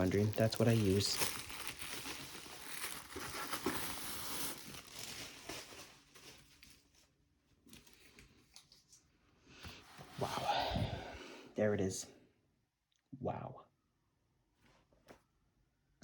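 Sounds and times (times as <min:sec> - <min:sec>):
packaging crinkling and rustling: 0:00.0 - 0:08.9.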